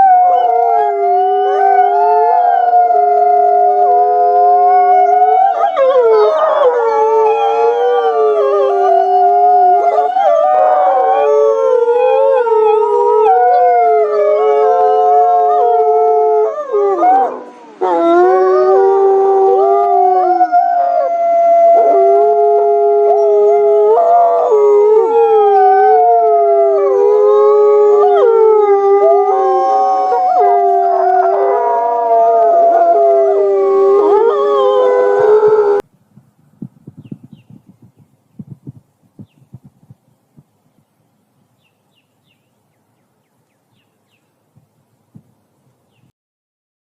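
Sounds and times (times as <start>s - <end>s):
wolves howling in chorus: 0.0s - 35.8s.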